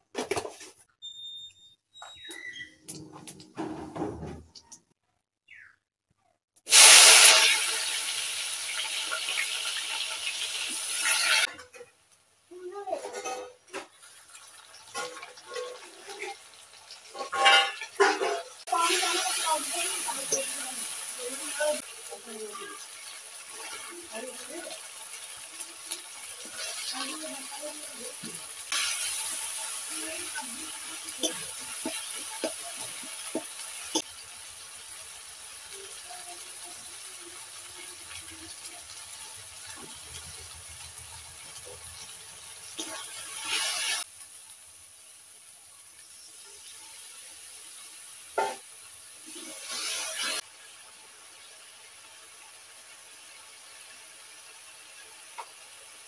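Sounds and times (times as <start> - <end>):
food sizzling in hot oil: 6.6 - 56.0.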